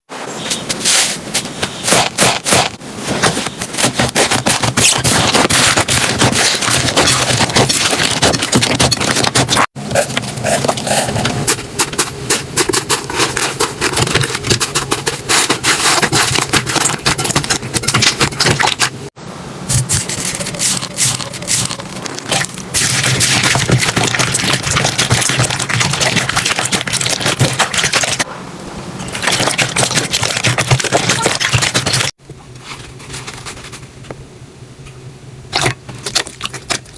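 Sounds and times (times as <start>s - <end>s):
slime crackling and popping: 21.0s - 28.2s.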